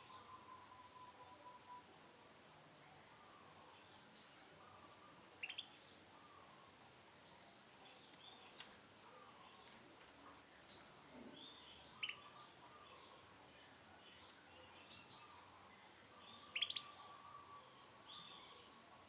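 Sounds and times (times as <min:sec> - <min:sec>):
canary chirping: 0:05.4 - 0:05.8, 0:10.7 - 0:12.6, 0:16.2 - 0:17.2.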